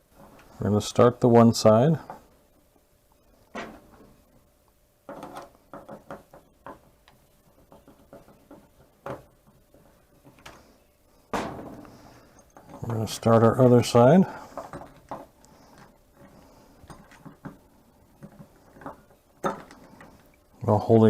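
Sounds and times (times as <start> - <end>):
small knocks: 5.1 - 10.6.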